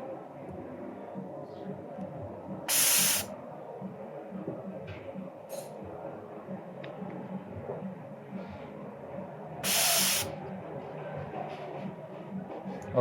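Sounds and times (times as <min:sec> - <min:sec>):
low background noise: 0:00.0 - 0:13.0
compressed air hiss: 0:02.7 - 0:03.3, 0:09.6 - 0:10.3.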